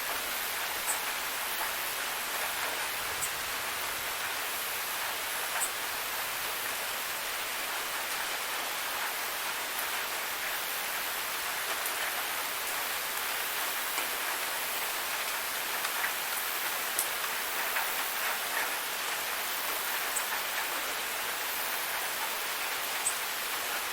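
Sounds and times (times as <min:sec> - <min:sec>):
steady rain hiss: 0:00.0 - 0:23.9.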